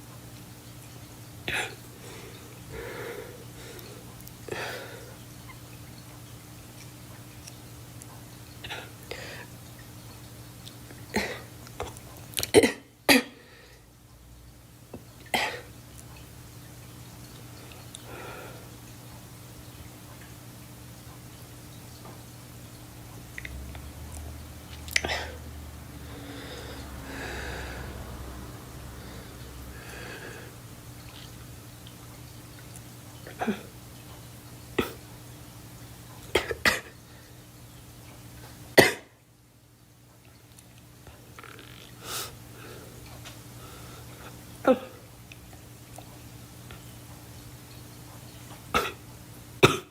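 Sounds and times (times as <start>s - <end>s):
girl coughing: 12.5s - 13.4s, 38.8s - 39.1s, 48.8s - 49.0s, 49.6s - 49.9s.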